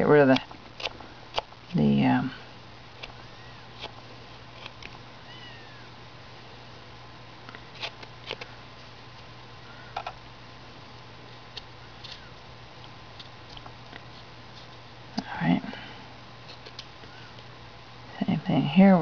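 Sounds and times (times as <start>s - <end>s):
carving knife cutting wood: 3.8s - 4.9s, 7.7s - 8.4s.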